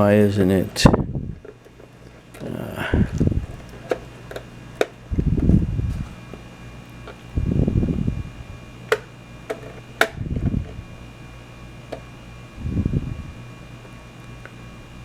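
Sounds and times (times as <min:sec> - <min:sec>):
faint electrical hum: 0:00.0 - 0:15.0
low rustling bumps: 0:05.1 - 0:06.3
test probes clicking on battery: 0:08.9 - 0:10.8.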